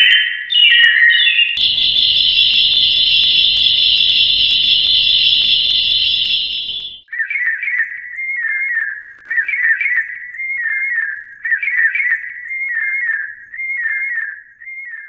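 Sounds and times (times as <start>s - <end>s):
altered robin song: 0.0s - 8.8s.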